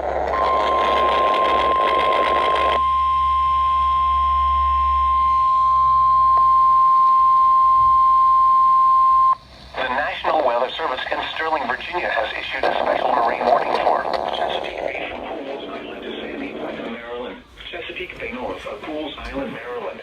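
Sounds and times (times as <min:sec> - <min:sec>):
radio static hiss: 0:00.0 - 0:02.8, 0:09.4 - 0:20.0
steady alarm tone: 0:00.0 - 0:09.4.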